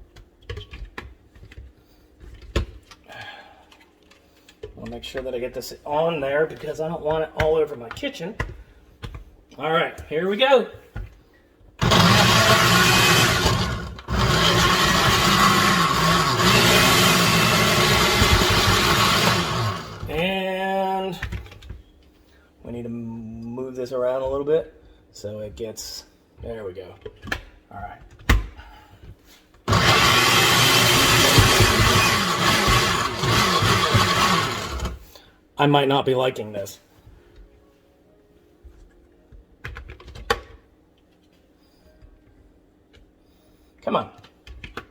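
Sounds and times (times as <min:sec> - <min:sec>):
blender motor chopping: 0:11.8 - 0:20.1, 0:29.7 - 0:35.0.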